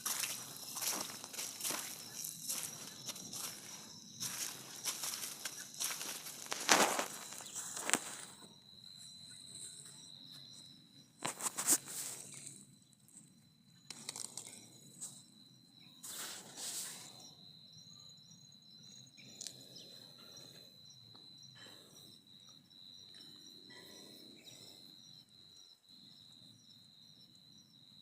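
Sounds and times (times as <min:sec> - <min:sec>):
rustling noises: 0:00.0 - 0:08.5, 0:11.2 - 0:12.6, 0:16.0 - 0:17.1
insect trilling: 0:00.0 - 0:25.7
higher insect chirp: 0:00.0 - 0:28.0.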